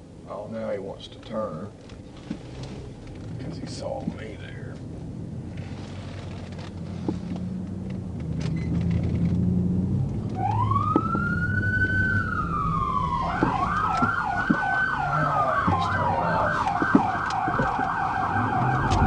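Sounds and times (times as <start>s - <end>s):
car engine running: 1.7s - 19.0s
police siren wailing: 10.2s - 19.0s
siren fast yelp: 10.4s - 19.0s.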